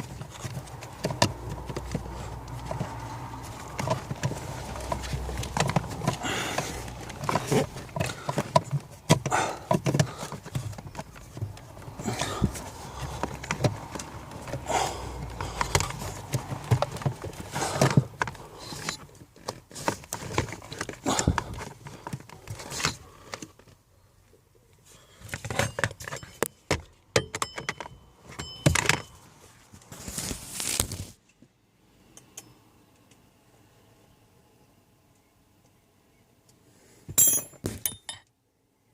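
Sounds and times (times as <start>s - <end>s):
tools and parts clattering: 25.2s - 29.2s, 37.1s - 38.3s
short jingling ring: 37.2s - 38.2s.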